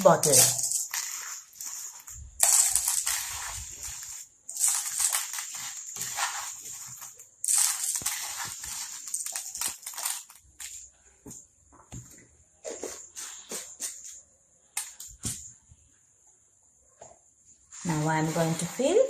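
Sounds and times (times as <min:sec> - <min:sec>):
lentils pouring into bottle: 0:00.0 - 0:10.9
single grains ticking: 0:00.0 - 0:11.0.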